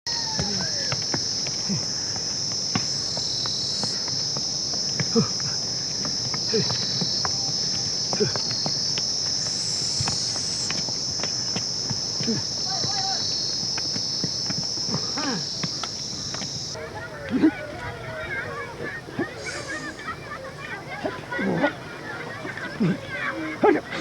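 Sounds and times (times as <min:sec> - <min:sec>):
high-pitched insect chorus: 0:00.1 - 0:16.8, 0:19.2 - 0:20.4.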